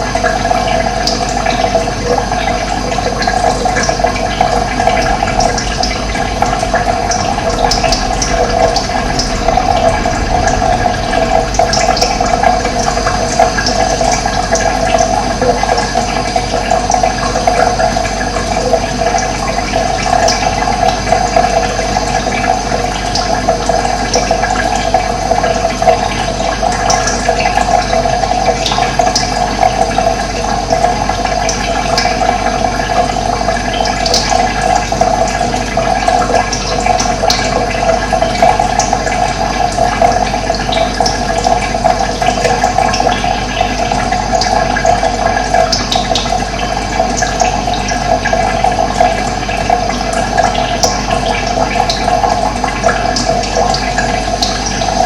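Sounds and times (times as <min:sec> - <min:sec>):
running water rushing: 0:00.0 - 0:55.0.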